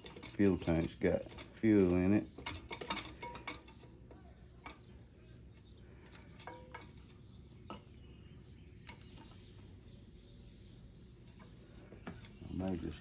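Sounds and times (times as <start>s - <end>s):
small tools clicking and tapping: 0.0s - 7.9s
low steady hum: 0.0s - 13.0s.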